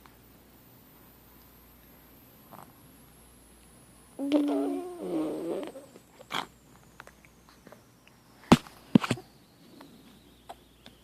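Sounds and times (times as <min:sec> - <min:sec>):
wavering vocal noise: 0:04.2 - 0:06.0.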